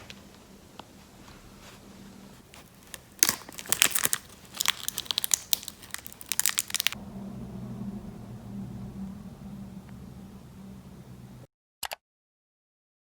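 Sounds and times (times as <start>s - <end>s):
steady low hum: 0.0s - 3.2s, 3.9s - 11.5s
packaging crinkling and tearing: 2.4s - 7.0s.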